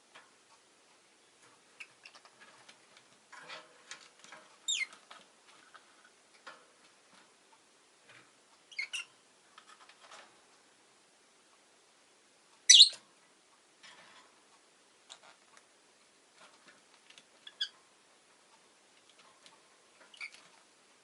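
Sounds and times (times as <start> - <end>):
lovebird chirps: 4.7 - 4.9, 12.7 - 13.0.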